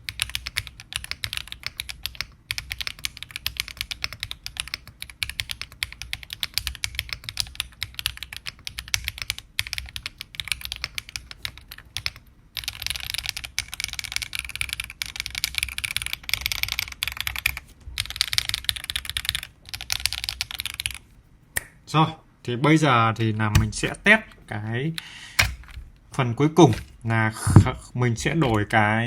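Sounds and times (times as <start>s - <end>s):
mechanical keyboard typing: 0.0s - 21.0s.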